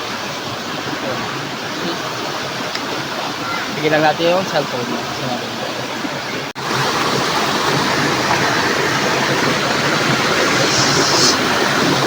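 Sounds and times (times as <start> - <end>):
river water rushing: 4.6 - 12.0.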